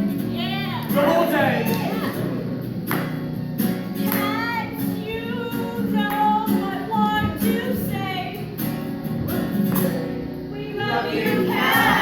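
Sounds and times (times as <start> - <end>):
voices singing pop song: 10.5 - 12.0.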